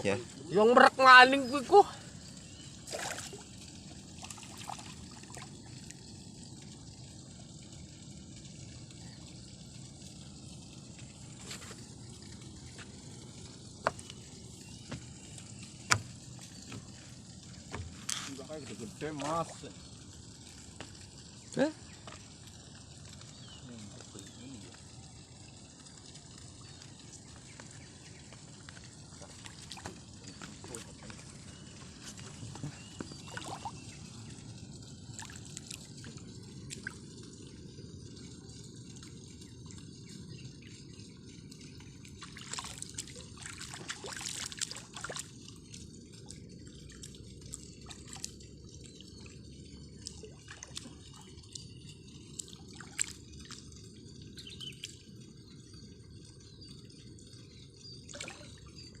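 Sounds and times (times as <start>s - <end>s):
water dripping and trickling: 0.0s - 59.0s.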